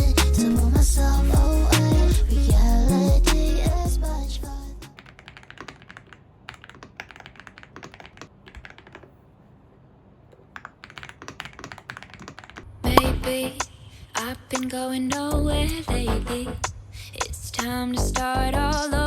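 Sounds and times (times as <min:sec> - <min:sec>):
loud music: 0:00.0 - 0:04.8
keyboard key clicks: 0:04.9 - 0:09.2.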